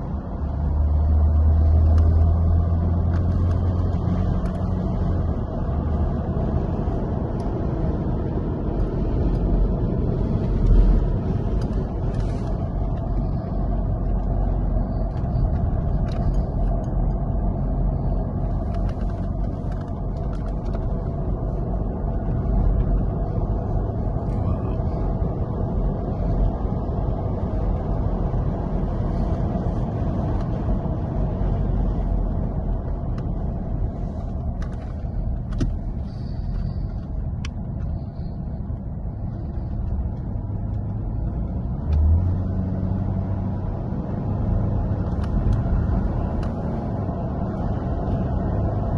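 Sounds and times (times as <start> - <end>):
car engine rumble: 0.0 - 48.9.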